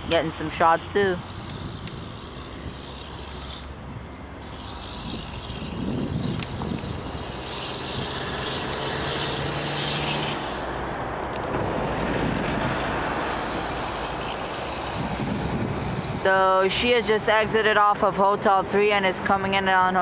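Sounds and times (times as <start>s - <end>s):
jet engines rushing: 0.0s - 19.6s.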